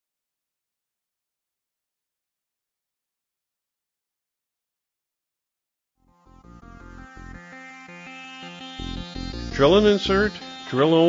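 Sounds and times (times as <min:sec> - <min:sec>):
background music: 0:06.1 - 0:11.0.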